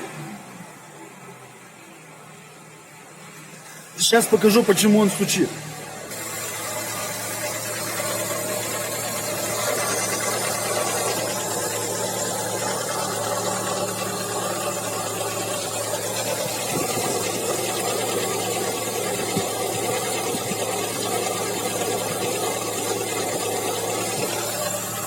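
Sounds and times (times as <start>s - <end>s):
car engine idling with knock: 5.8s - 25.0s.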